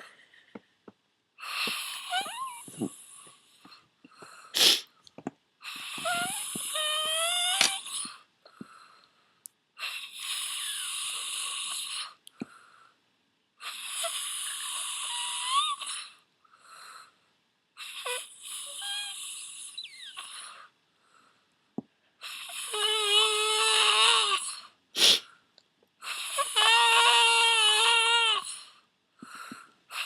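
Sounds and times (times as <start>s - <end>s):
person snoring: 4.6s - 4.8s, 22.4s - 25.2s.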